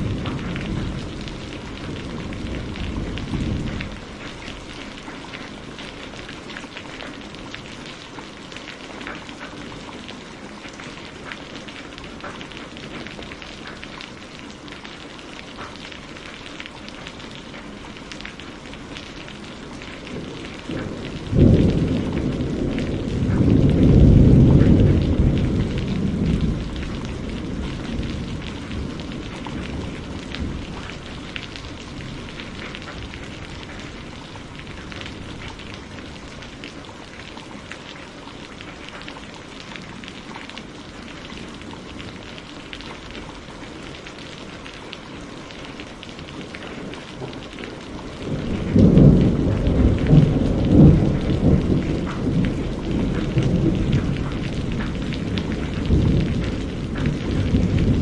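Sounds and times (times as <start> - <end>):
rolling thunder: 0.0 - 5.0, 19.8 - 36.7, 46.5 - 58.0
steady rain falling: 0.0 - 58.0.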